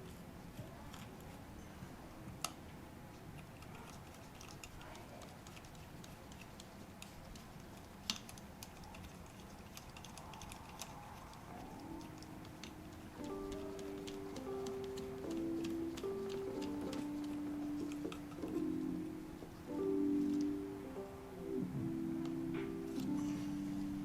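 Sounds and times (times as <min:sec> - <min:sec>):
background music: 0:11.6 - 0:24.0.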